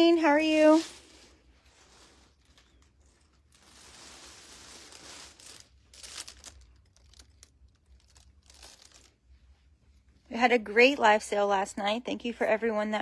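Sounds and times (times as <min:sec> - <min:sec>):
rustling and crinkling: 0:00.0 - 0:10.3.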